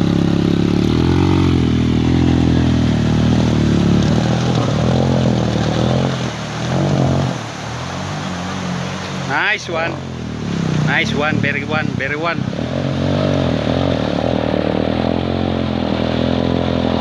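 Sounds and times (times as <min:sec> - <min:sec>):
motorcycle engine revving: 0:00.0 - 0:17.0.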